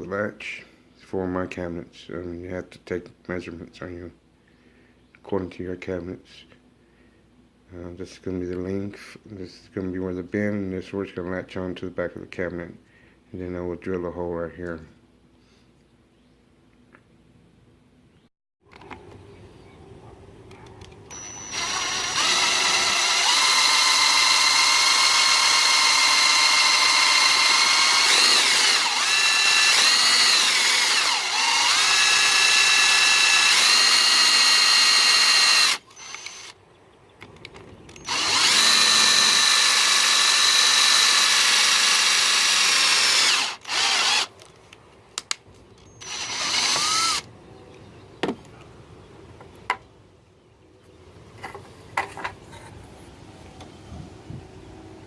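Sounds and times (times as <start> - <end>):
electric drill drilling metal: 21.1 - 36.5, 38.0 - 44.3, 46.0 - 47.3.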